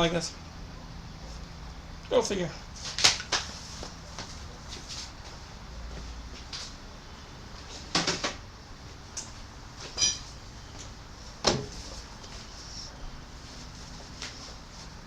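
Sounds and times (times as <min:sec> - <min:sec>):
metallic clink: 0:10.0 - 0:10.3.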